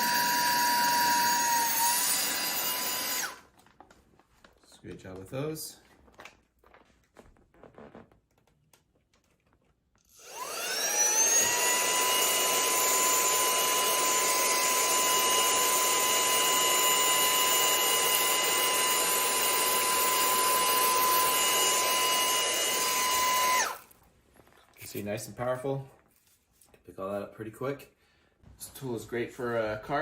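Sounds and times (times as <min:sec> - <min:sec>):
handheld vacuum motor whine: 0:00.0 - 0:03.5, 0:10.1 - 0:24.0.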